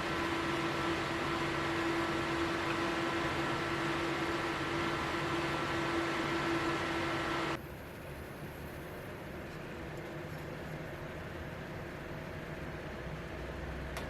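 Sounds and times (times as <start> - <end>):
cooler fan whirring: 0.0 - 7.6.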